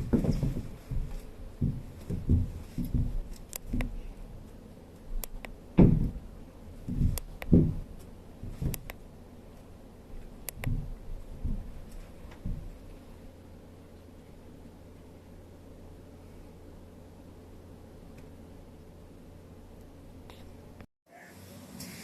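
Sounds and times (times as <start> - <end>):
dull thumps and knocks: 0.0 - 4.0, 5.8 - 8.9, 10.6 - 12.8.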